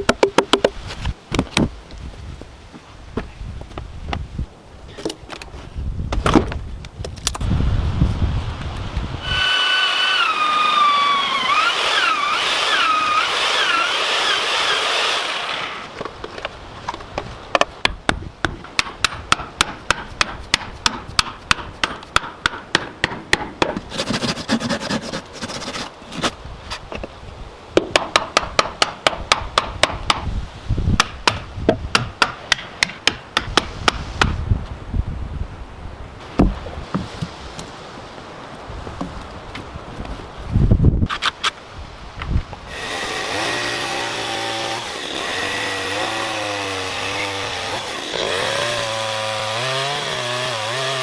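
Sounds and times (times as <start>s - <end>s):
hand tool striking wood: 0.0s - 0.8s, 17.5s - 25.8s
whining power tool: 9.2s - 15.9s, 42.7s - 51.0s.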